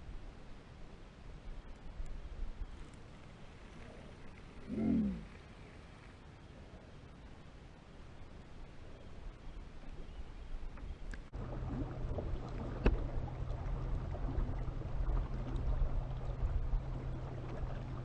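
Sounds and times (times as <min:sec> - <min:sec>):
motor humming and rumbling: 0:11.3 - 0:18.0.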